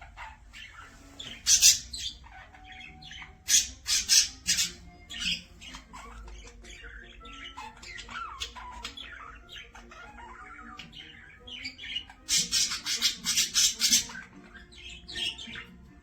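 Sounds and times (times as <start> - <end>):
cockatiel squawking: 0.0 - 16.0
soft bird chirps: 0.0 - 16.0.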